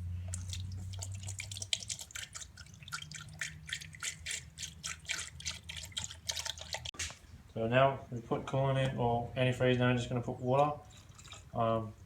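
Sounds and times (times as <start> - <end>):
coolant pouring and splashing: 0.0 - 7.0, 10.8 - 11.9
low steady hum: 0.0 - 12.0.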